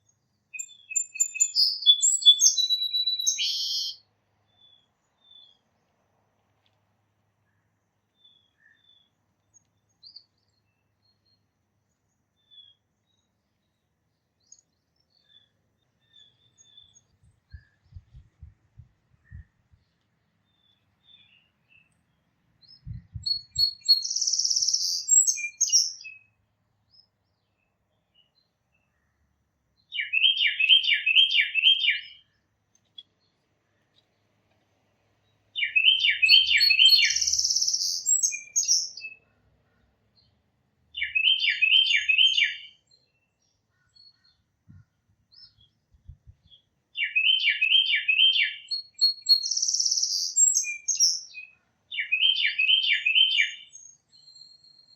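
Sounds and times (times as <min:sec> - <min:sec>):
songbirds singing: 0:00.0 - 0:54.9.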